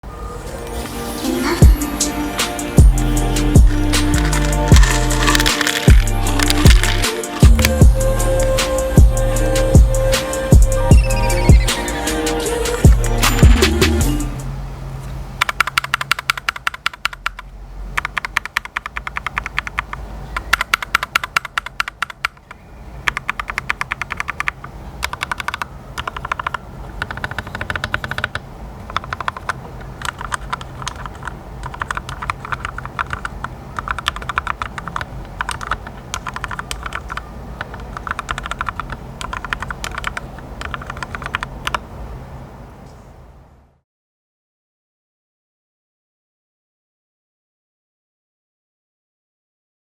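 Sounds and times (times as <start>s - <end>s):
mechanical keyboard typing: 3.0s - 8.0s, 12.5s - 14.0s, 15.4s - 41.8s.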